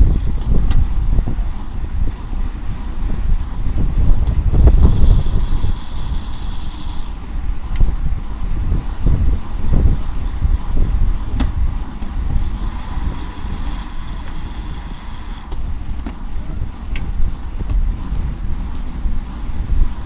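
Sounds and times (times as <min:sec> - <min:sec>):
wind rushing over microphone: 0:00.0 - 0:20.0
thin high hiss: 0:04.7 - 0:07.2.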